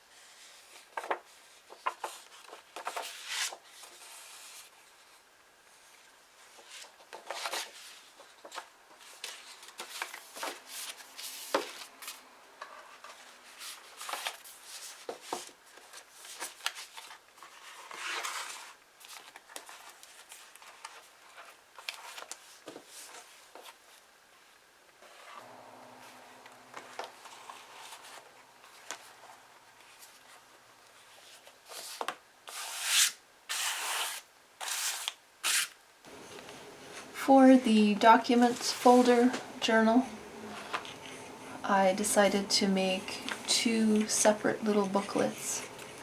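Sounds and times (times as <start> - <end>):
paper rustling: 0.2 - 5.2, 6.4 - 24.0, 26.4 - 37.1.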